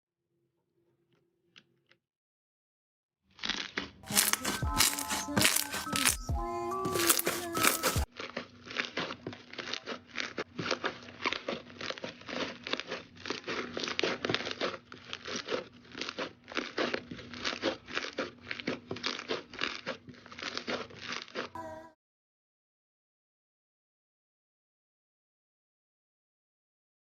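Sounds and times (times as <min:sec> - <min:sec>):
slime crackling and popping: 0:03.3 - 0:21.6.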